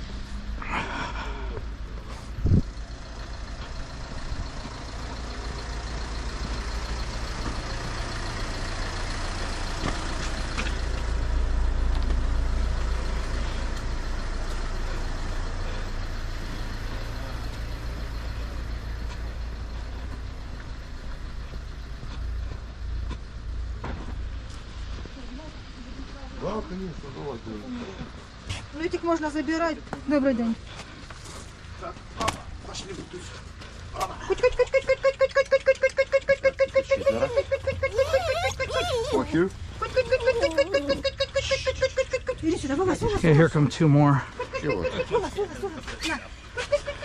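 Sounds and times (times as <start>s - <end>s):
vehicle engine rumbling: 0.0s - 47.0s.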